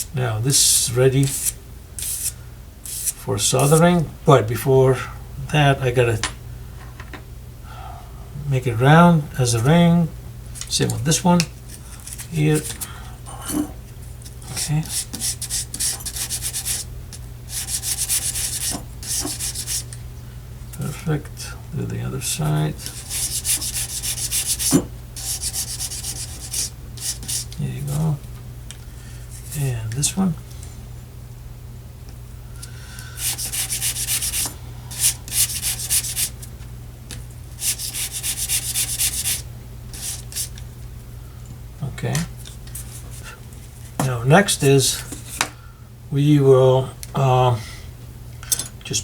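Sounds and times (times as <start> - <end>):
abrasive rubbing on metal: 17.5 - 19.9, 22.7 - 27.6, 33.2 - 36.4.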